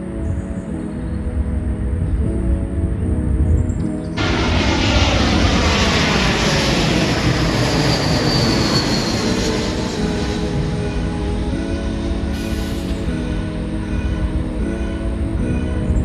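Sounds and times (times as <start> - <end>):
jet airliner engines whining: 4.2 - 16.0.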